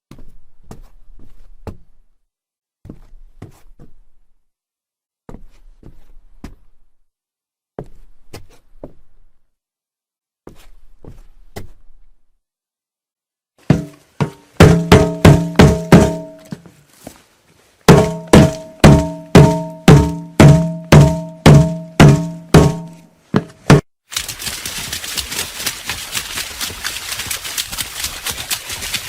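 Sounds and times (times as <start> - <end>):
hollow object struck with thunks: 13.7 - 16.7, 17.9 - 23.9.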